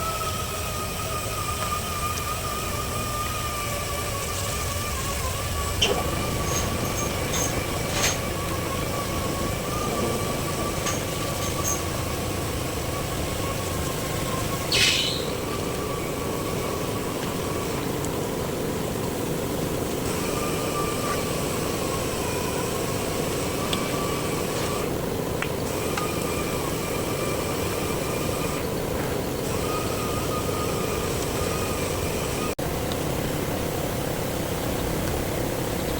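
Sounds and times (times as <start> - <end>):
hissing burst: 0.0 - 18.0
small motor whining: 0.0 - 35.9.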